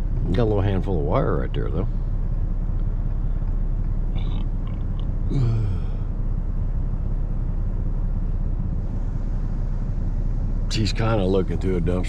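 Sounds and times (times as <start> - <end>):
vehicle engine idling: 0.0 - 12.0
short vocal sound: 4.2 - 6.1.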